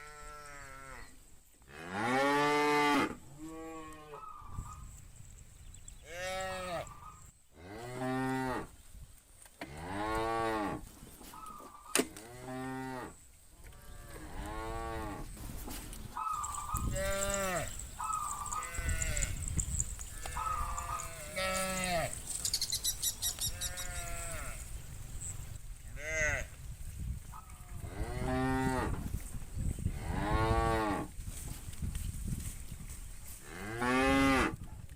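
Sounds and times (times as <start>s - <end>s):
cattle mooing: 16.3s - 22.5s, 23.4s - 24.6s.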